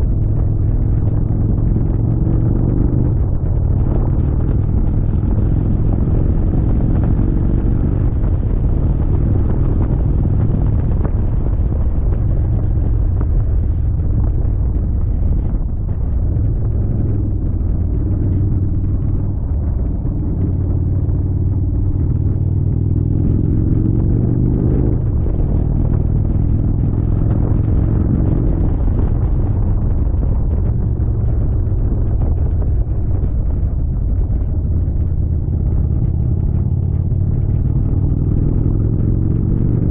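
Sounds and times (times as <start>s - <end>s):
motorcycle engine running: 0.0s - 39.9s
wind and road noise: 0.0s - 39.9s.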